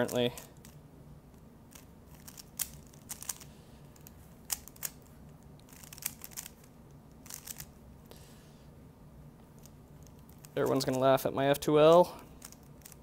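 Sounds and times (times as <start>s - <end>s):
faint low hum: 0.0s - 13.0s
puzzle cube plastic clicks: 1.7s - 7.7s, 12.4s - 13.0s.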